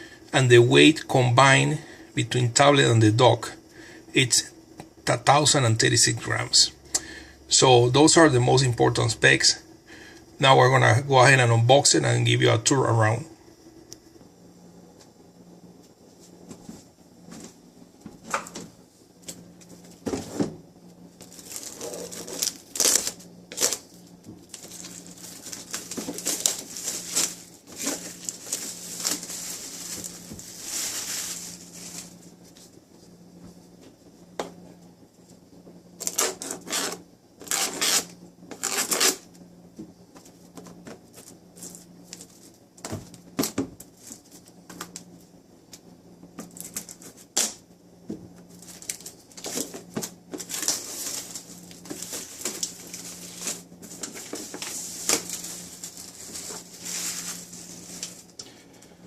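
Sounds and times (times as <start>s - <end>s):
packaging rustling and scraping: 21.2s - 32.8s, 36.0s - 39.3s, 46.4s - 47.4s, 48.5s - 58.6s.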